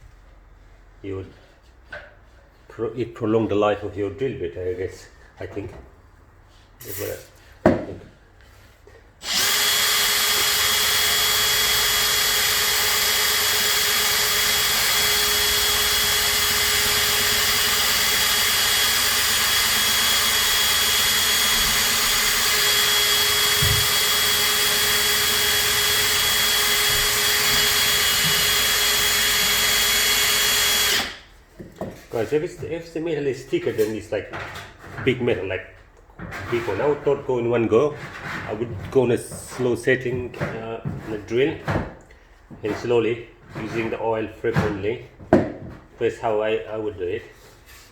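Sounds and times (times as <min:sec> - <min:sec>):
power drill boring through sheet metal: 0:09.2 - 0:31.3.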